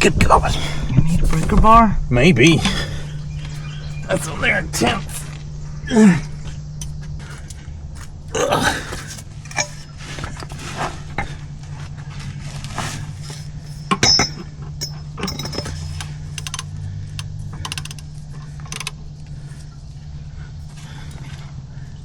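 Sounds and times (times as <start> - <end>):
low hum: 0.0 - 22.0
metal tools clanking: 9.1 - 10.9, 12.8 - 16.7
socket wrench clicking: 13.9 - 18.1, 18.7 - 19.0.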